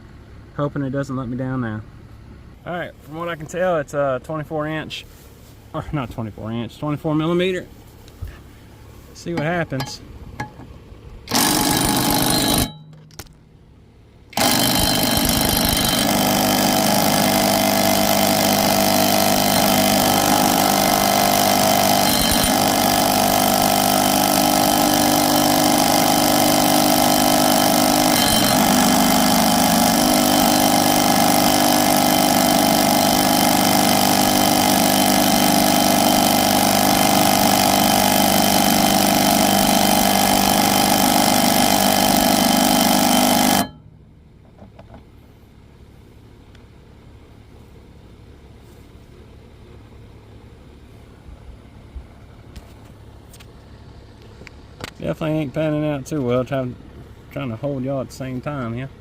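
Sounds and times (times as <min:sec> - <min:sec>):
impact wrench hammering: 0:09.4 - 0:10.7, 0:11.3 - 0:13.4, 0:14.4 - 0:44.0.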